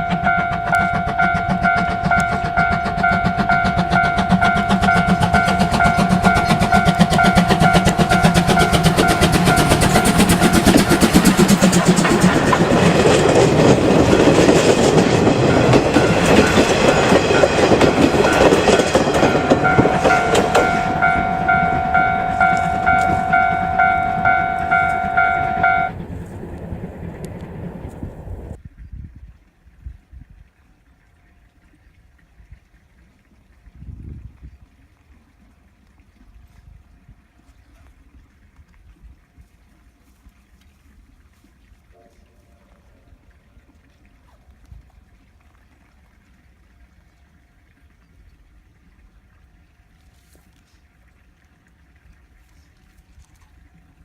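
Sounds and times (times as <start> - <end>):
level crossing bell ringing: 0.0 - 11.5, 15.4 - 26.0
train wheels rumbling and clattering: 0.0 - 28.6.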